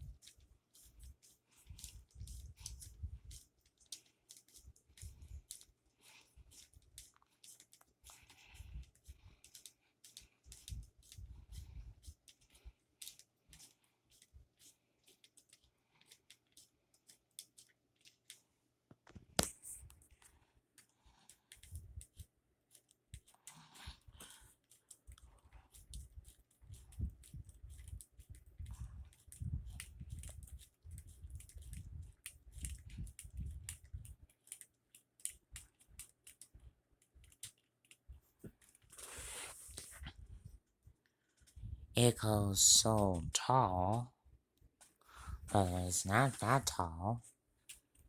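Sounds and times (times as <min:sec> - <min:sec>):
plastic gears clicking and rattling: 0:00.2 - 0:18.4, 0:29.1 - 0:39.0.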